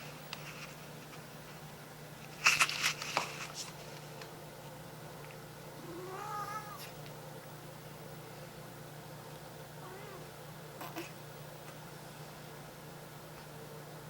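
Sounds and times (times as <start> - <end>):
cat yawn-meow: 5.8 - 6.9, 9.8 - 11.1.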